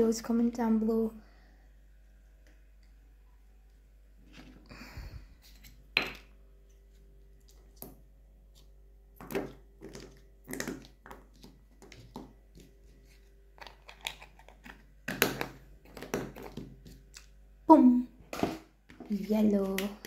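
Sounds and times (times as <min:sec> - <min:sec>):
plastic pots knocking and clicking: 0:13.6 - 0:16.9.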